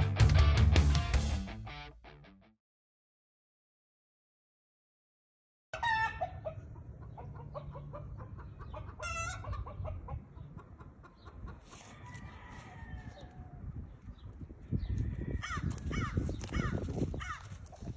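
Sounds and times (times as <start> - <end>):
rooster crowing: 5.8 - 6.5, 9.0 - 9.5, 11.8 - 13.7, 15.0 - 16.2
chickens squawking: 5.8 - 13.9, 14.6 - 17.8.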